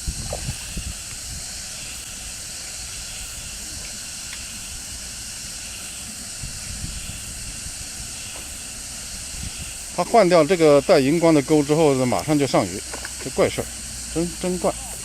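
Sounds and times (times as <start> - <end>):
wind rumble on microphone: 0.0 - 4.0, 6.2 - 10.0
outdoor ambience hiss: 0.0 - 15.0.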